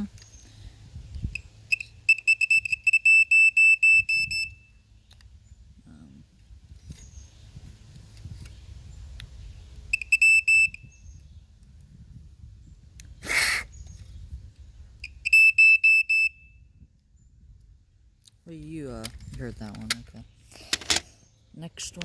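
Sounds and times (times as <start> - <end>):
smoke alarm beeping: 1.7 - 4.8, 9.9 - 10.9, 15.0 - 16.6.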